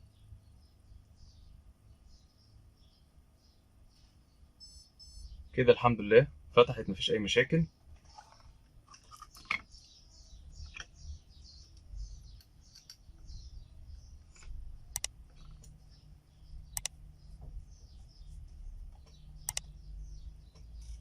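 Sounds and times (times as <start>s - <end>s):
small high chirps: 0.0s - 5.6s, 9.2s - 21.0s
steady low hum: 0.0s - 21.0s
faint sharp clicks: 14.4s - 15.8s, 16.7s - 17.0s, 18.9s - 19.7s.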